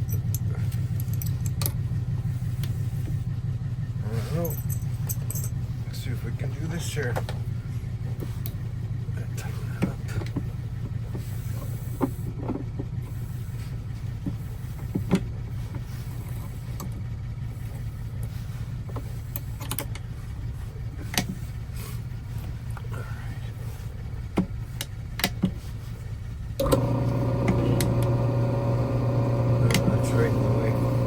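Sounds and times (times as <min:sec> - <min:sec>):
steady low hum: 0:00.0 - 0:31.0
machine motor hum with whine: 0:26.3 - 0:31.0.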